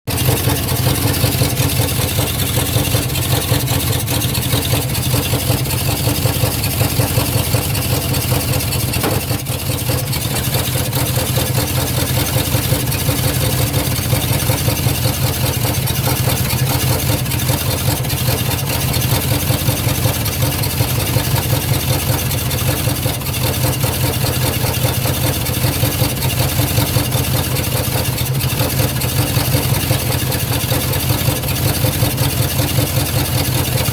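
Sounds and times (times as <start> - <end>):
engine running: 0.0 - 33.9
engine pop: 0.1 - 20.4.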